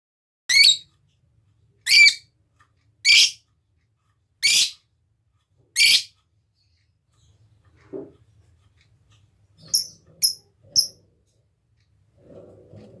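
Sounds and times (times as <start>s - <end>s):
lovebird shrill calls: 0.5s - 0.8s, 1.9s - 2.2s, 3.1s - 3.4s, 4.4s - 4.8s, 5.8s - 6.1s.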